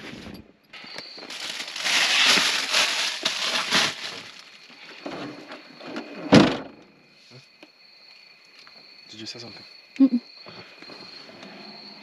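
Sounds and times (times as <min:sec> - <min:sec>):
rustling and crinkling: 0:00.0 - 0:06.2.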